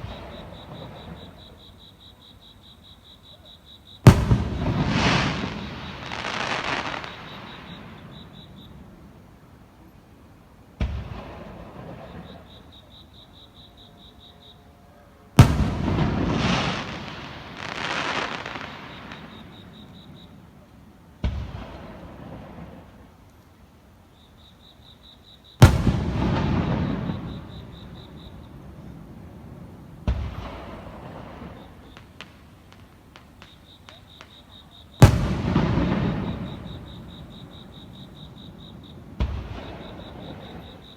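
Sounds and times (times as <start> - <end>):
hissing crackle: 4.0 - 9.3, 15.4 - 23.6, 25.6 - 40.9
firework shell bang: 15.4 - 16.3.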